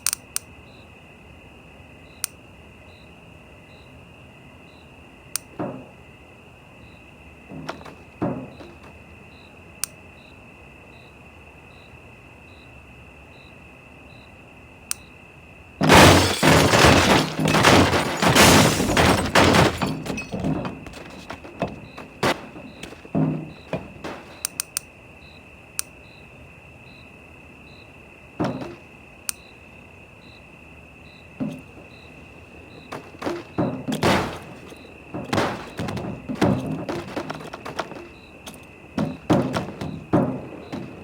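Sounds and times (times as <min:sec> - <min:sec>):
sharp cracks and snaps: 0:00.0 - 0:00.5, 0:24.1 - 0:24.9
house demolition crashing: 0:07.4 - 0:09.1, 0:15.8 - 0:24.5, 0:28.4 - 0:28.9, 0:31.4 - 0:41.0.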